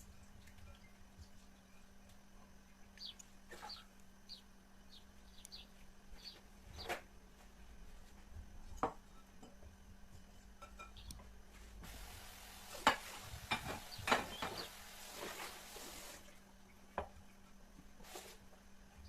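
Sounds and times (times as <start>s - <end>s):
faint steady hiss: 0.0s - 19.0s
dishes and utensils clinking: 8.8s - 11.1s, 12.8s - 14.7s.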